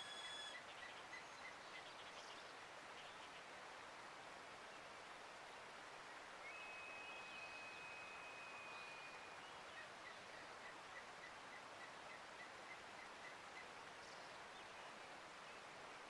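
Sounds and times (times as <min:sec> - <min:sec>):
bird singing: 0:00.0 - 0:02.2.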